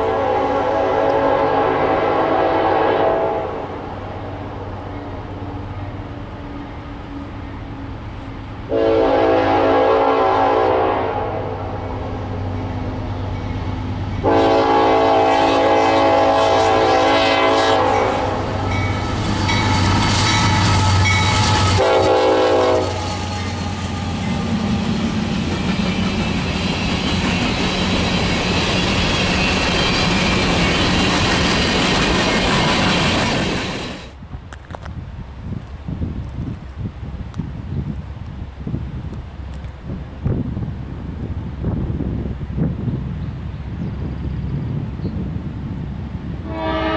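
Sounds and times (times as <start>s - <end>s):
locomotive air horn blasts: 0.0s - 3.7s, 8.7s - 11.8s, 14.2s - 18.9s, 19.5s - 23.6s, 46.4s - 46.9s
train rumbling and wheels clattering: 0.0s - 46.9s.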